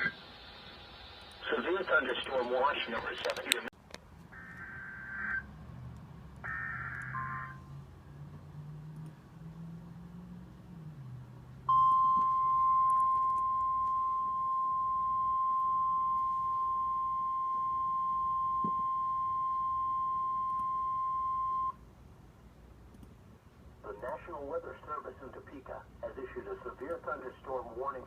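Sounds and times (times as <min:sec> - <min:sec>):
faint radio hiss: 0:00.0 - 0:03.8, 0:23.3 - 0:28.0
loud high alarm tone: 0:06.4 - 0:07.7, 0:11.7 - 0:21.7.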